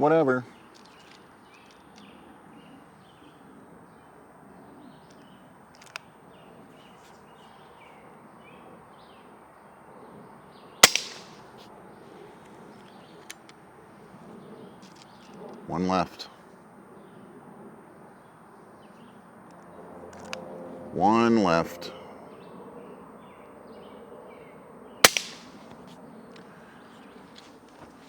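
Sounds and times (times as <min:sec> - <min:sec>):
low outdoor background: 0:00.0 - 0:28.0
airgun shot: 0:10.8 - 0:11.5, 0:25.0 - 0:25.7.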